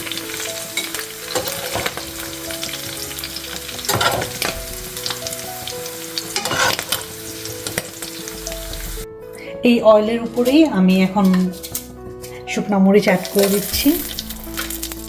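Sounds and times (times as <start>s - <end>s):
fish sizzling in hot oil: 0.0s - 9.1s, 13.1s - 15.0s
utensil scraping and knocking pan: 3.9s - 4.6s, 6.4s - 8.0s.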